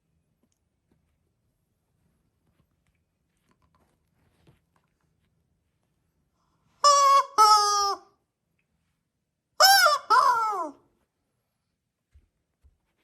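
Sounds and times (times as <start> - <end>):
squeaky chicken toy squeaking: 6.8 - 8.1, 9.6 - 10.8.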